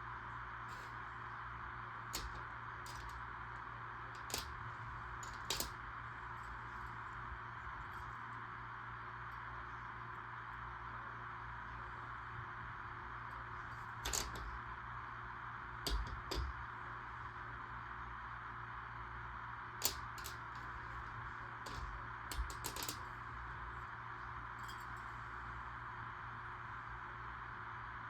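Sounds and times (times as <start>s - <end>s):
plastic pieces clicking: 2.2s - 3.2s, 4.2s - 4.6s, 5.2s - 5.8s, 14.0s - 14.5s, 15.9s - 16.6s, 19.8s - 20.8s, 21.6s - 23.0s.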